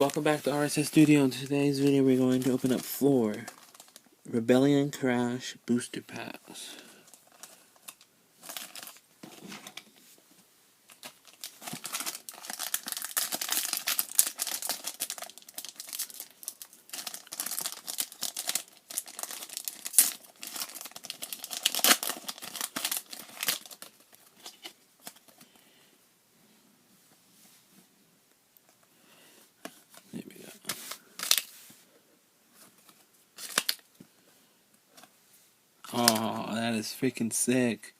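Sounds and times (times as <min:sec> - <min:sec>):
foil wrapper crinkling: 0:10.9 - 0:25.4
foil wrapper ripping: 0:11.0 - 0:25.2.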